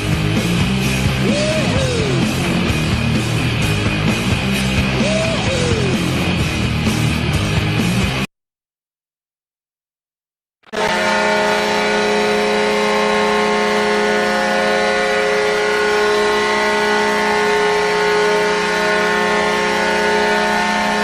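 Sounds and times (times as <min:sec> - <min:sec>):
goal horn blast: 0:01.1 - 0:03.1, 0:10.7 - 0:21.0.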